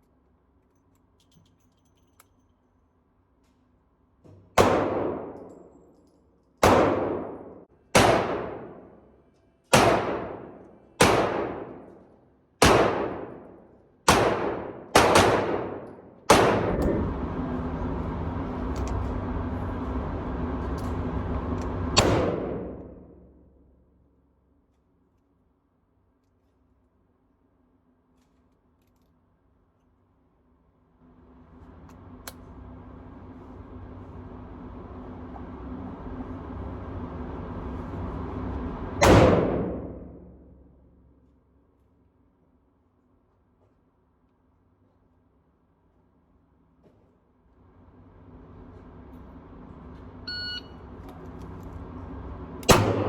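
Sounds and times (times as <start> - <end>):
revolver gunshots: 4.6 - 5.5, 6.6 - 9.0, 9.7 - 11.9, 12.6 - 17.2, 22.0 - 23.2, 39.0 - 40.5, 52.6 - 53.0.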